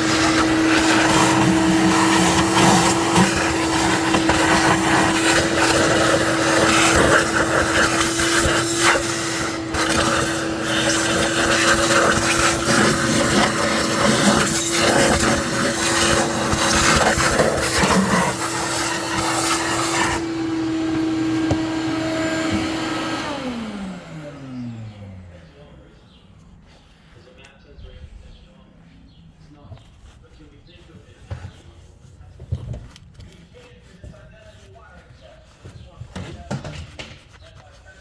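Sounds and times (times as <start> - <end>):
grinding against hard surface: 0.0 - 23.3
power tool motor running: 0.0 - 25.4.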